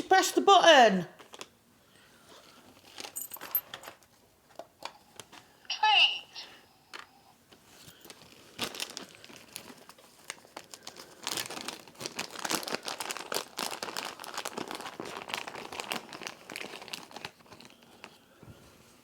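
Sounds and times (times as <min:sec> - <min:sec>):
plastic bag crinkling: 0:01.2 - 0:01.5, 0:07.9 - 0:18.2.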